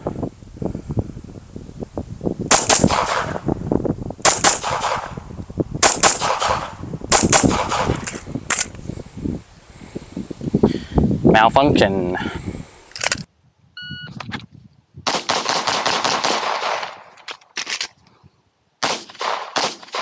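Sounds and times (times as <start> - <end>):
pistol shots: 2.5 - 3.4, 4.2 - 5.2, 5.8 - 8.2, 15.1 - 17.1, 18.8 - 20.0.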